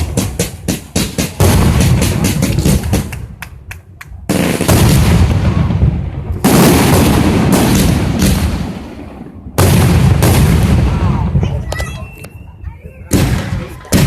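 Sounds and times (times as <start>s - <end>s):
small firework cracks: 0.0s - 4.9s
loud firework bangs: 0.0s - 12.0s, 13.1s - 14.0s.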